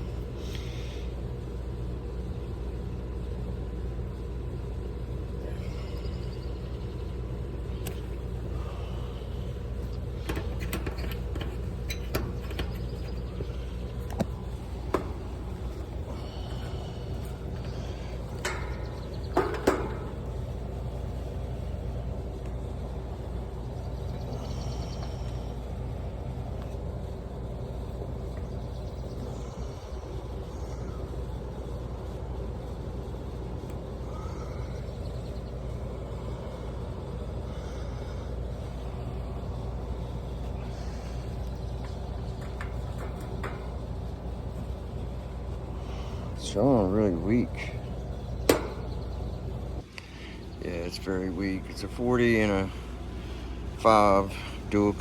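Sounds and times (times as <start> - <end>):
outdoor air conditioner humming: 0.0 - 55.0
metallic clicks and knocks: 9.9 - 15.9, 16.5 - 20.8, 41.4 - 44.6, 48.4 - 49.3
brief rattle: 10.2 - 20.8, 40.4 - 44.8, 47.6 - 49.4.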